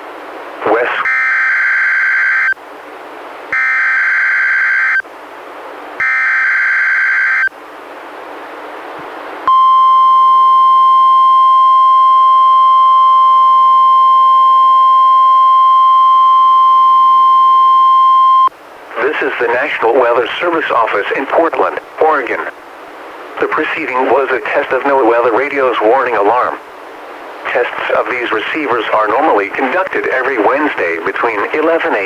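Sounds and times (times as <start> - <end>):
steady warning alarm tone: 1.0 - 2.6, 3.5 - 5.0, 6.0 - 7.5, 9.5 - 18.5.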